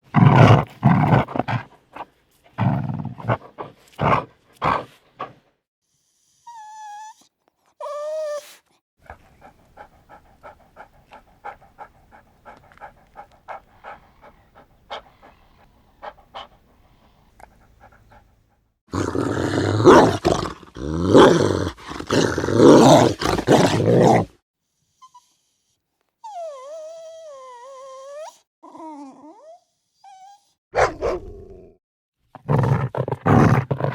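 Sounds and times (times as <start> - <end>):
dog panting: 3.2 - 5.5, 9.0 - 18.7
dog whimpering: 6.2 - 8.6, 26.2 - 30.6
dog barking: 30.8 - 31.3.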